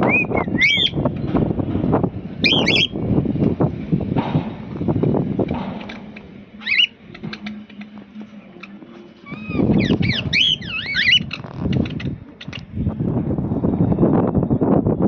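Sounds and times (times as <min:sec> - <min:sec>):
cockatiels whistling and chirping: 0:00.0 - 0:01.0, 0:02.4 - 0:02.9, 0:06.6 - 0:07.4, 0:09.3 - 0:12.6
wind buffeting microphone: 0:00.0 - 0:07.7, 0:09.3 - 0:15.0.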